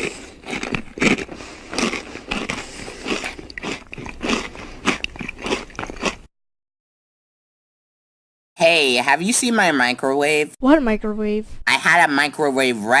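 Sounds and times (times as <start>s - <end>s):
crunchy biting and chewing: 0.0s - 6.3s.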